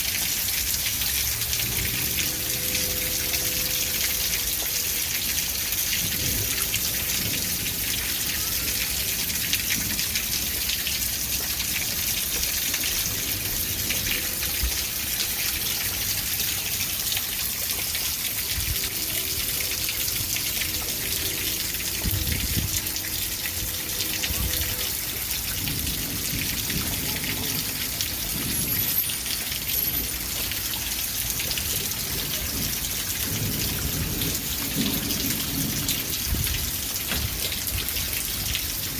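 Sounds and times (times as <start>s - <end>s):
rain falling: 0.0s - 38.9s.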